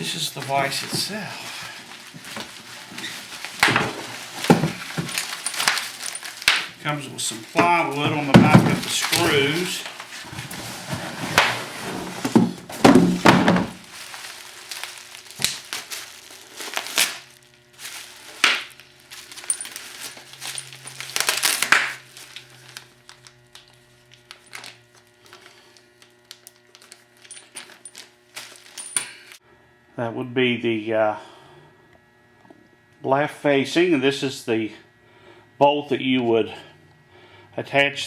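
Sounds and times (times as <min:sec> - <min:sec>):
heavy thunks and clunks: 0:07.6 - 0:09.4, 0:11.0 - 0:13.8.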